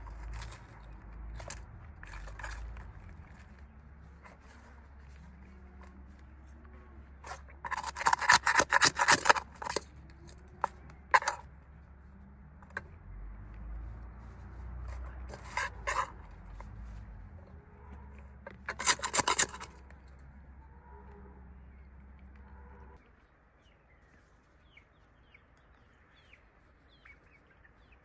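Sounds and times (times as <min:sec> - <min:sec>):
rapid rasping scraping strokes: 0:00.0 - 0:11.6, 0:13.6 - 0:20.2.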